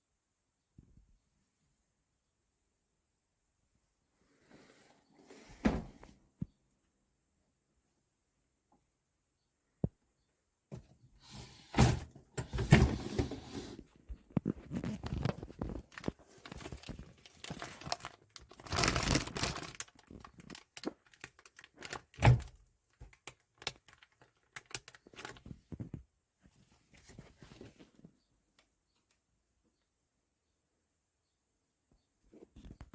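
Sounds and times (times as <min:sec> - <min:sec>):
rustling and crinkling: 0:10.7 - 0:29.2.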